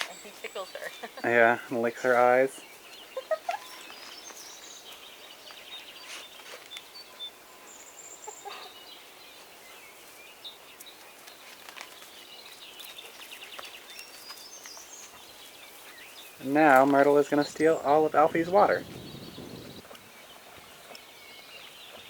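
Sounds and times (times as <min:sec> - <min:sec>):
faint bird chirping: 0:00.0 - 0:22.0.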